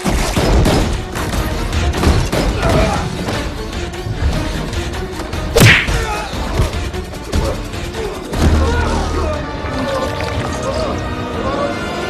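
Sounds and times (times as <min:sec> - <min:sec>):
soundtrack music: 0:00.0 - 0:12.0.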